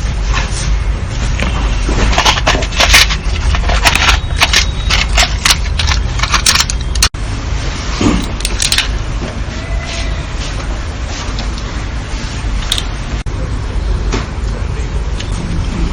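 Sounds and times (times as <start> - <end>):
objects being handled: 0.0 - 7.2, 8.0 - 13.2.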